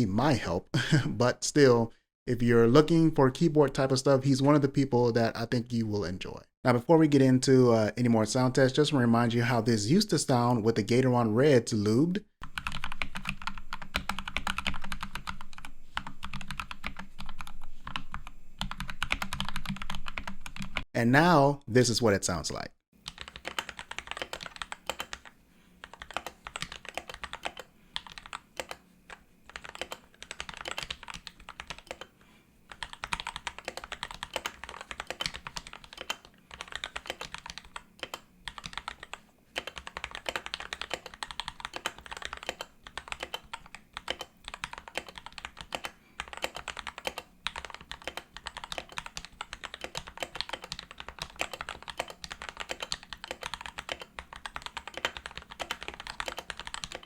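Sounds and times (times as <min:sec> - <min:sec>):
mechanical keyboard typing: 0:12.4 - 0:20.8, 0:23.0 - 0:32.1, 0:32.7 - 0:57.0.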